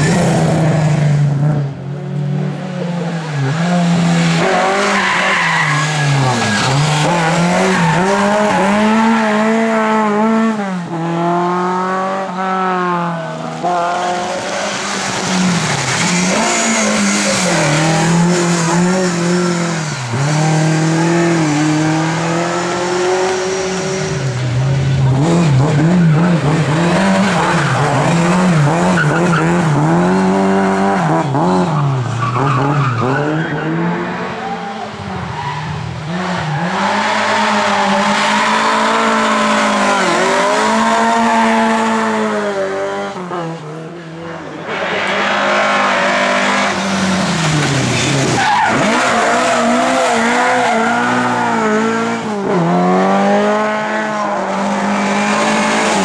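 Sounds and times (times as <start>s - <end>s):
race car engines revving: 0.0s - 56.0s.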